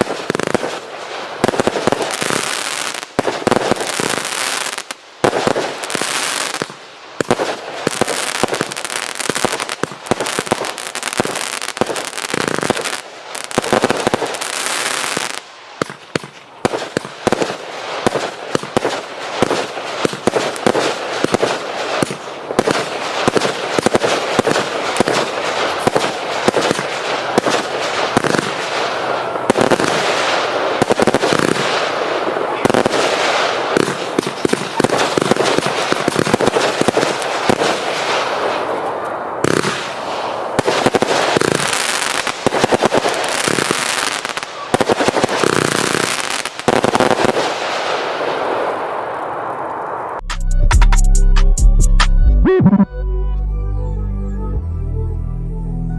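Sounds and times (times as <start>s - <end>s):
firework hissing: 1.3s - 16.3s.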